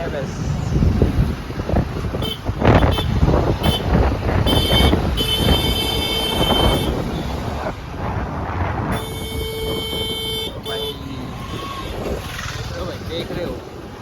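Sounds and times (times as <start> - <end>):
motorbike road noise: 0.0 - 14.0
wind buffeting microphone: 0.0 - 14.0
high steady horn: 2.2 - 7.3, 8.8 - 11.8.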